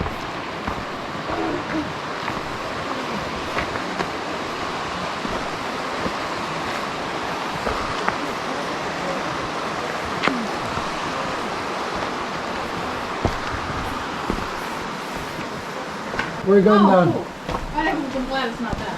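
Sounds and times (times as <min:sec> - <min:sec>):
flowing water rushing: 0:00.0 - 0:18.9.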